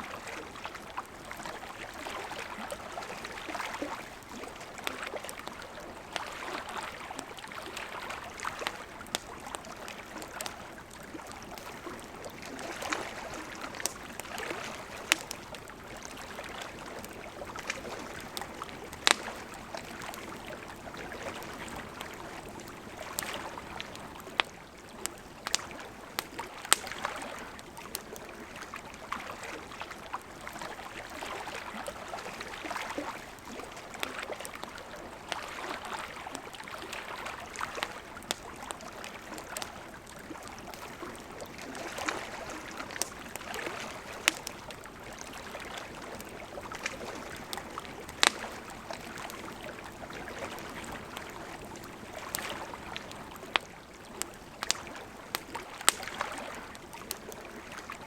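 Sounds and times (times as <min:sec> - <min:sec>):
lake water lapping: 0:00.0 - 0:58.0
campfire crackling and popping: 0:00.1 - 0:58.0.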